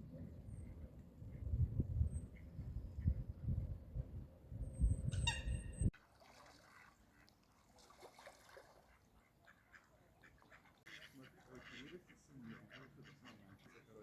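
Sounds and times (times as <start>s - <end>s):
wind buffeting microphone: 0.0s - 5.9s.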